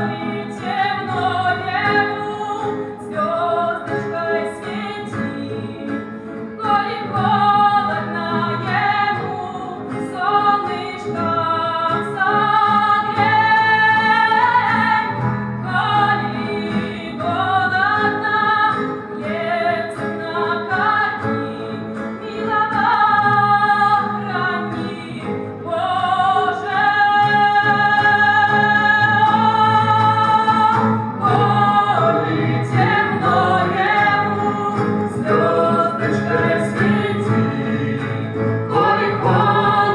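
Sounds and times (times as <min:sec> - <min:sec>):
guitar: 0:00.0 - 0:39.9
woman singing slow song: 0:00.0 - 0:39.9.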